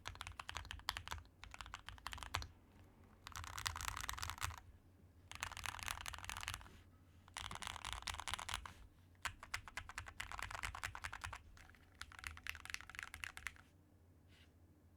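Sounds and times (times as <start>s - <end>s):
mechanical keyboard typing: 0.0s - 2.5s, 3.2s - 4.6s, 5.3s - 6.7s, 7.3s - 13.6s.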